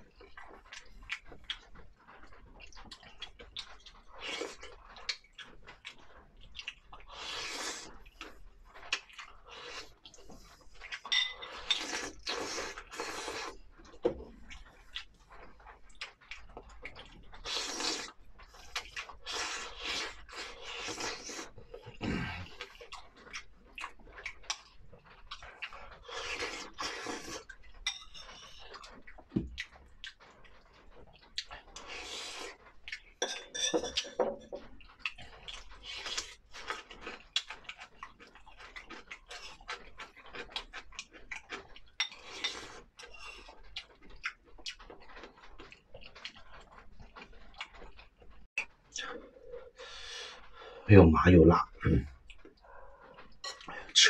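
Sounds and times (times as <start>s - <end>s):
mouth sounds of eating and sipping: 2.6s - 27.7s, 31.3s - 33.2s, 48.9s - 54.0s.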